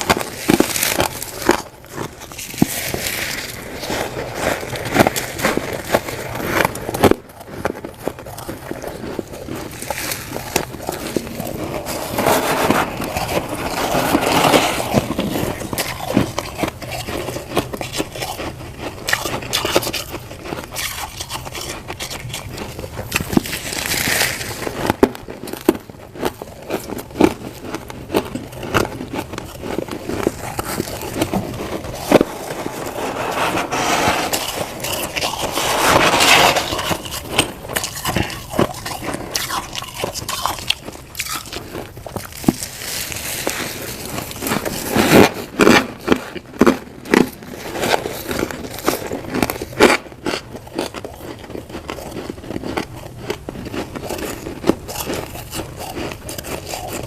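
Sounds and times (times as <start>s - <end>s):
frost crunching and scraping: 0.0s - 57.0s.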